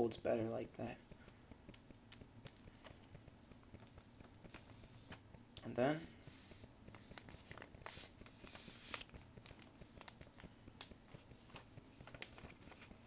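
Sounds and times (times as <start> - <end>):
paper being folded: 2.6 - 5.3, 5.9 - 13.0.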